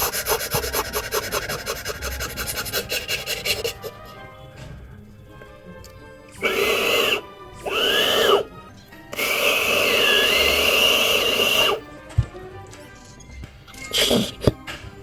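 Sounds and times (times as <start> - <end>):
beatboxer making sound effects: 0.0 - 4.0, 6.4 - 8.4, 13.9 - 14.6.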